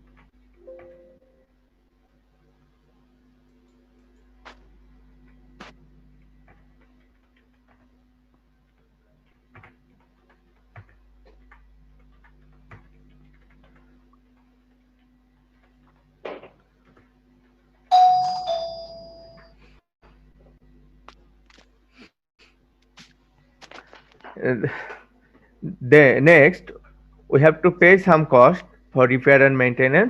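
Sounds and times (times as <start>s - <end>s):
two-note chime: 0.6s - 1.4s.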